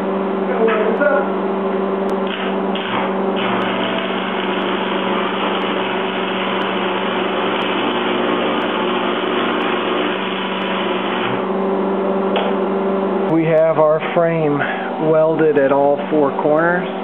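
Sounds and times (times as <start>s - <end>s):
electrical hum: 0.0s - 17.0s
welding arc crackling sizzle: 2.1s - 12.6s.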